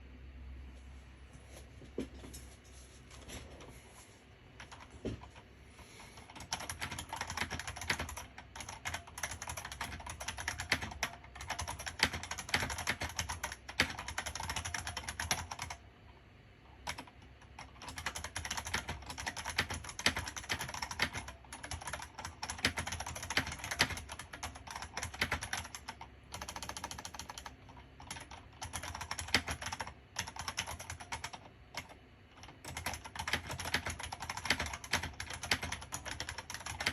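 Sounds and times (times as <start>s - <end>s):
mechanical keyboard typing: 4.6s - 5.4s, 6.2s - 36.9s.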